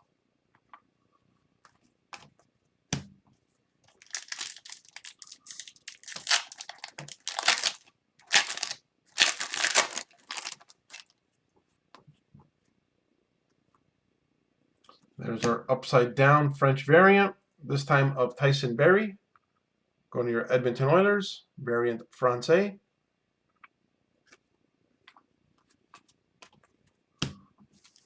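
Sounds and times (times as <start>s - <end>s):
wrapper tearing and crinkling: 4.0s - 11.1s.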